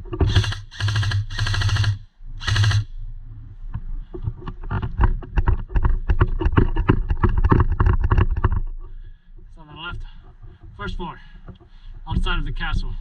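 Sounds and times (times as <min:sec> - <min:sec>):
rapid irregular clicks and knocks: 0:00.0 - 0:02.8, 0:03.7 - 0:10.8, 0:11.4 - 0:12.4
airsoft gun fire bursts: 0:00.2 - 0:02.9.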